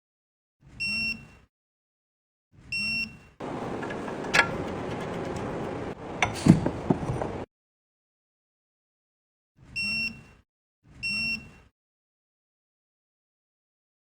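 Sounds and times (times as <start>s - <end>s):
knocks: 3.4s - 7.5s.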